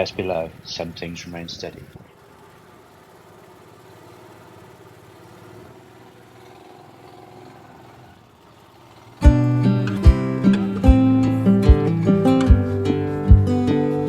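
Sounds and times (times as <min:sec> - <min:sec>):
boat engine running faintly: 0:00.0 - 0:14.0
strummed acoustic guitar music: 0:09.0 - 0:14.0.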